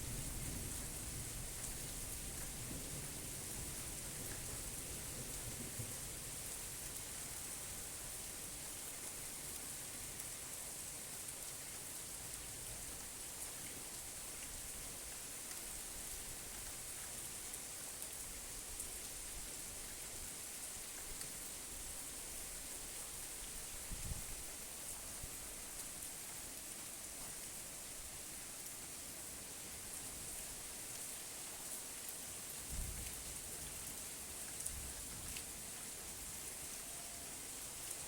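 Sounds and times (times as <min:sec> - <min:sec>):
steady rain falling: 0:00.0 - 0:38.0.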